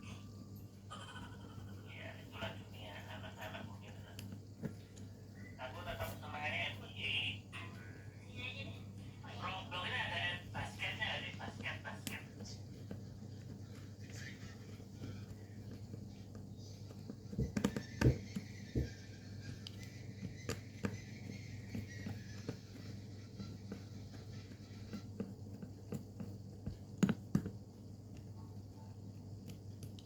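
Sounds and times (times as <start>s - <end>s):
objects knocking and clicking: 14.9s - 22.8s.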